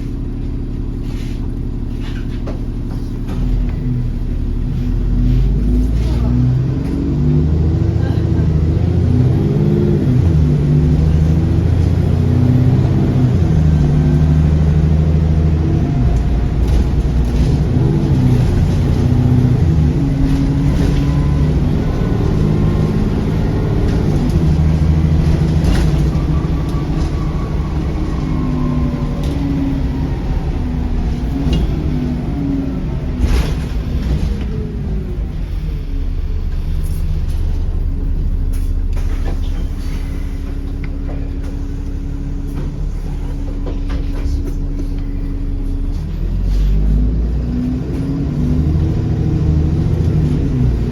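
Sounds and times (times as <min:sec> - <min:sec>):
bus diesel engine running: 0:00.0 - 0:50.9
faint turbo whine: 0:11.1 - 0:48.1.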